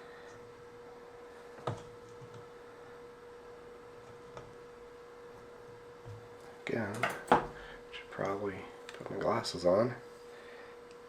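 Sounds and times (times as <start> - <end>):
high-pitched electrical hum: 0.0 - 11.0.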